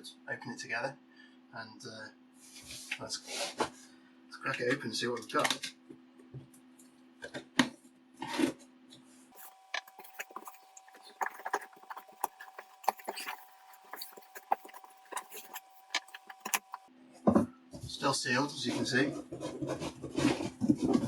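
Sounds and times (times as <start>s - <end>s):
cardboard scraping and rubbing: 9.4s - 16.9s, 18.7s - 21.0s
small clicks and rustles: 9.4s - 16.9s.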